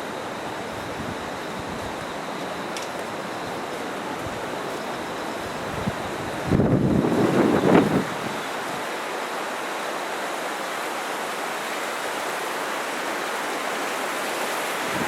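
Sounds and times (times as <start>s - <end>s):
river rushing: 0.0s - 15.0s
wind buffeting microphone: 5.5s - 8.5s.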